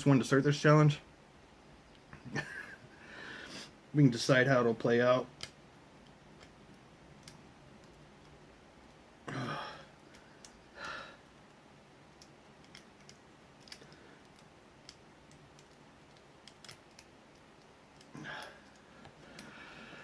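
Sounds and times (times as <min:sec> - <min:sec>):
lock picks clicking in padlock: 0:12.2 - 0:18.8.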